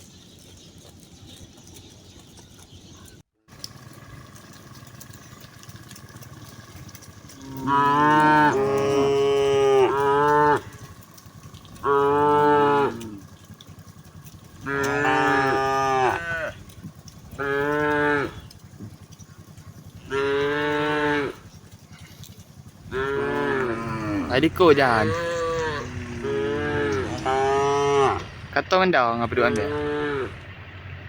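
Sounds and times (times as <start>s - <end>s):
cattle mooing: 5.3s - 28.5s, 29.2s - 30.5s.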